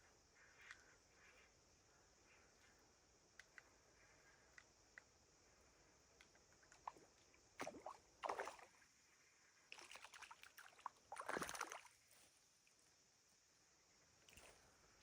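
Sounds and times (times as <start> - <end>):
water splashing and sloshing: 6.7 - 8.8, 9.7 - 12.2.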